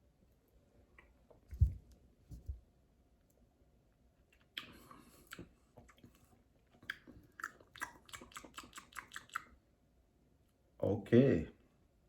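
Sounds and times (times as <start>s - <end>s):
wet lip and tongue smacks: 4.3s - 9.6s.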